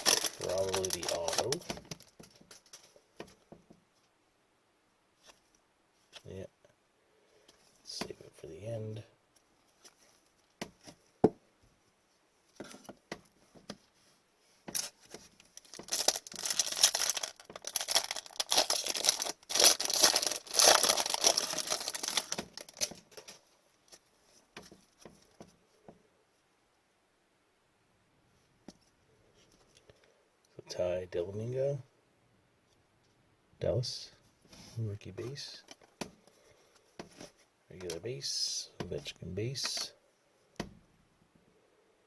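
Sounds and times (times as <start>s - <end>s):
foil wrappers torn and crinkled: 0.0s - 2.8s, 14.8s - 23.4s.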